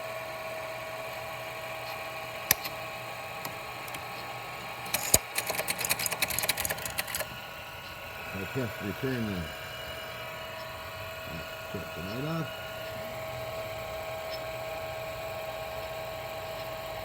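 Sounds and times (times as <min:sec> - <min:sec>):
teletype motor hum: 0:00.0 - 0:17.0
teletype printing clatter: 0:04.8 - 0:07.4.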